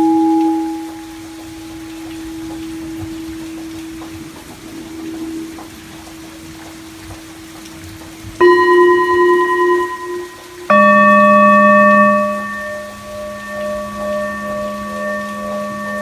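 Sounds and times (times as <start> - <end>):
singing bowls ringing: 0.0 - 6.6, 8.4 - 16.0.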